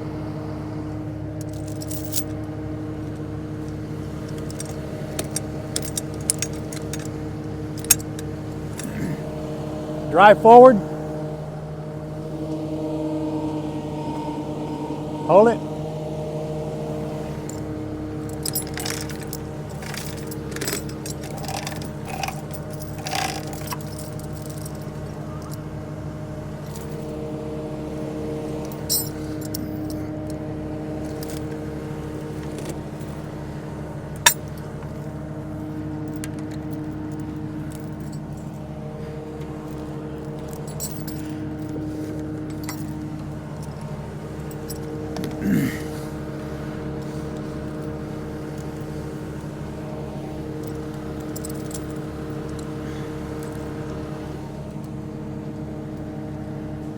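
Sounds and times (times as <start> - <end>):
diesel engine running: 0.0 - 56.9
metallic clinks and clanks: 1.4 - 2.4, 4.2 - 9.2, 18.3 - 25.6, 26.6 - 27.3, 28.6 - 30.4, 31.0 - 33.4, 34.2 - 35.2, 36.0 - 38.7, 39.4 - 43.8, 50.5 - 52.8.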